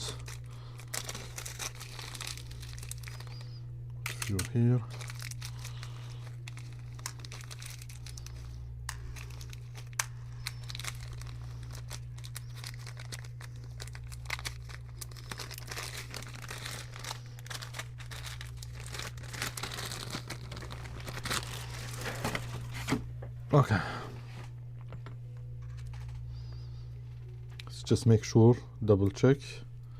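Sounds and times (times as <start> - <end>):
plastic crinkling and rustling: 0.0 - 23.0
steady low hum: 0.0 - 29.9.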